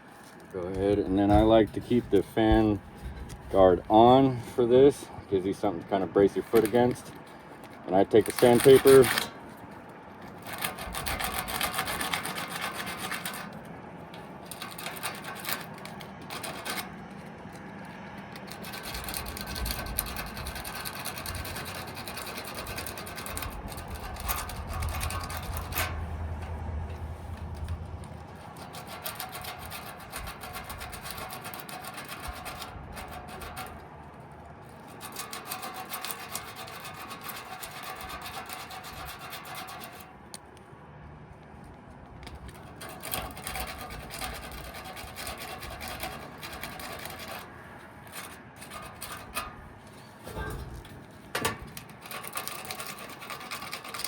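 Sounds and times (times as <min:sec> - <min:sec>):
sandpaper rasping on metal shaft: 0:00.2 - 0:07.2, 0:07.9 - 0:09.4, 0:10.3 - 0:17.3, 0:18.3 - 0:26.2, 0:28.3 - 0:33.8, 0:34.6 - 0:40.1, 0:42.6 - 0:50.8, 0:51.8 - 0:54.0.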